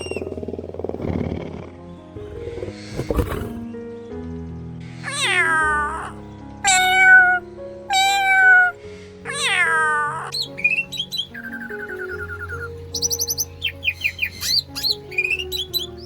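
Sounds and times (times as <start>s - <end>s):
cat meowing: 0.0s - 0.7s, 5.0s - 10.4s
background music: 0.0s - 16.0s.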